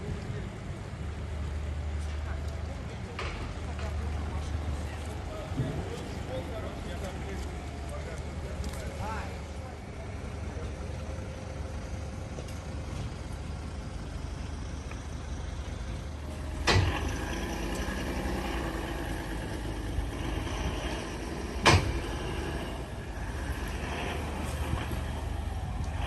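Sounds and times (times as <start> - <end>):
vehicle low rumble: 0.0 - 26.0
sharp thuds: 19.5 - 25.1.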